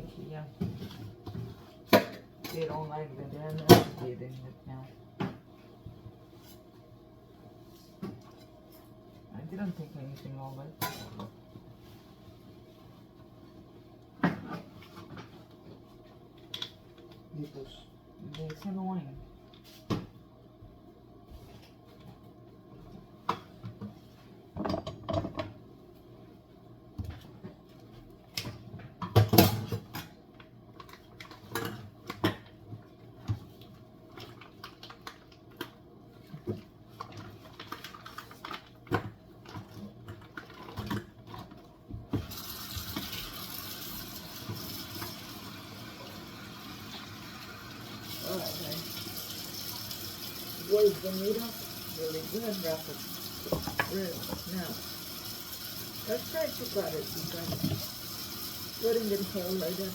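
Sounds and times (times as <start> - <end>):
tap running: 48.2 - 59.9.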